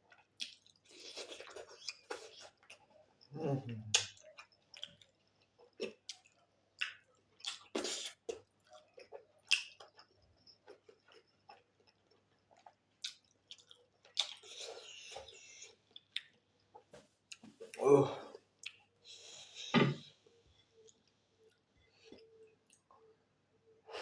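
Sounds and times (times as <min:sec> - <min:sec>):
close chewing with wet smacks: 0:00.0 - 0:03.3, 0:03.9 - 0:17.8, 0:18.6 - 0:19.0.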